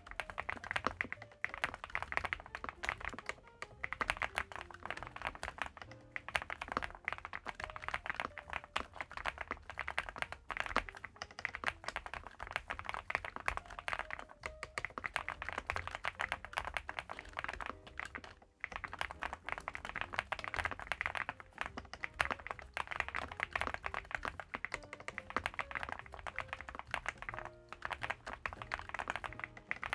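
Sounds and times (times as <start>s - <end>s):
fast typing on mechanical keyboard: 0.0s - 29.9s.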